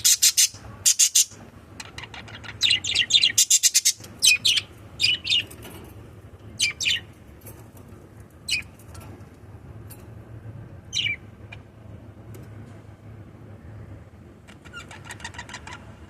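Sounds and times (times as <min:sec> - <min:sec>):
budgerigars chirping: 0:00.0 - 0:05.5, 0:06.6 - 0:07.1, 0:10.9 - 0:11.6, 0:14.5 - 0:15.9
steady low hum: 0:00.0 - 0:16.0.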